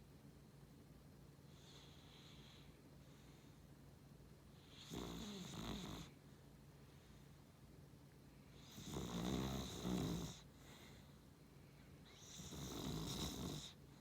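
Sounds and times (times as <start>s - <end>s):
dog snoring: 4.6s - 6.2s, 8.5s - 10.5s, 12.0s - 13.8s.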